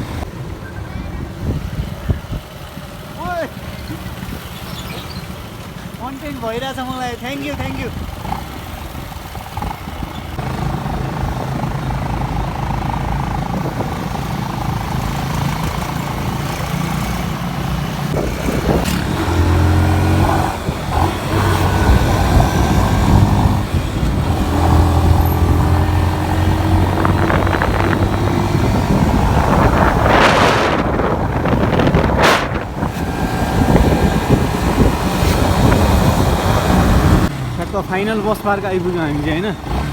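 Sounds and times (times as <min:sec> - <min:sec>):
vehicle engine running: 0:07.5 - 0:37.3
wind hitting microphone: 0:18.0 - 0:37.3.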